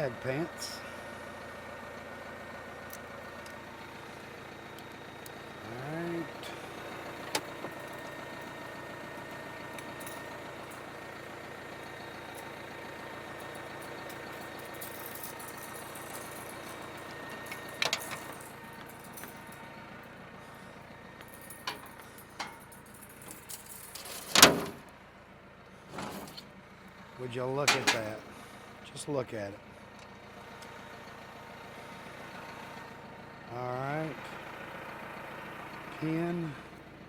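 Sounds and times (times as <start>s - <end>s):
tractor engine idling: 0.0s - 37.0s
loud clunk: 24.0s - 24.8s, 27.7s - 28.2s
metal clicks and knocks: 27.7s - 28.2s.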